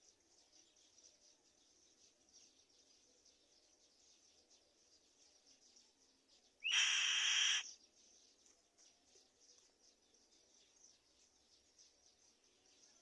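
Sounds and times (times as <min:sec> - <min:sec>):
insects chirring: 0:06.6 - 0:07.6
bird harsh screeching call: 0:06.6 - 0:07.7.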